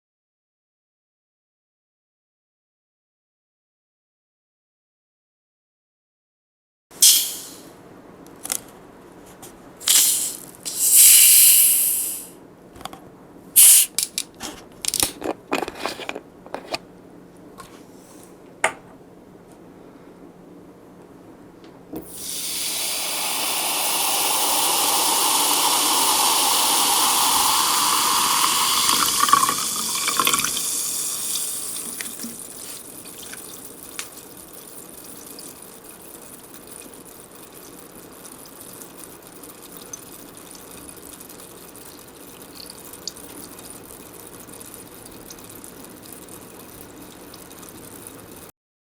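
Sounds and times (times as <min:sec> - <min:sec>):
fizzing bubbles popping: 0:22.2 - 0:37.8
water pouring into a glass: 0:22.2 - 0:48.3.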